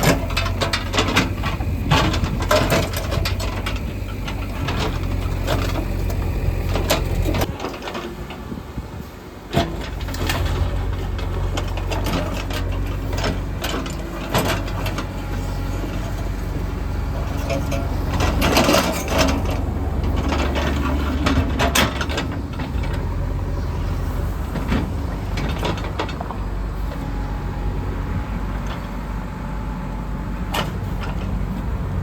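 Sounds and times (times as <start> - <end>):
machinery knocks and clanks: 0.0 - 8.6, 9.5 - 29.2
diesel engine running: 0.0 - 32.0.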